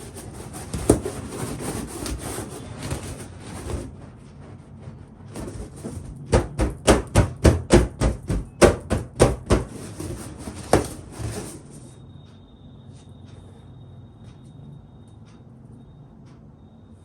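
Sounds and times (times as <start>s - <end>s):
rubbing on balloon rubber: 0.0s - 6.9s, 8.2s - 11.8s.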